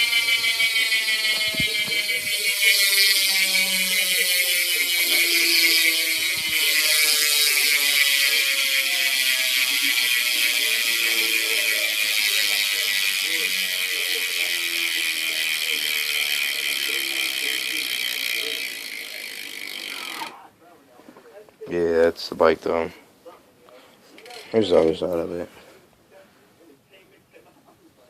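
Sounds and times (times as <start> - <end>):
bicycle hub ratcheting clicks: 0.0 - 20.4, 24.2 - 24.6.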